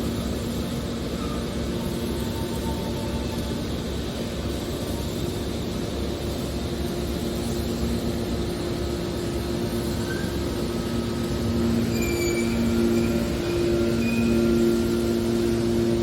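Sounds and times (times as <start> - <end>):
hydraulic baler machine hum: 0.1 - 16.0.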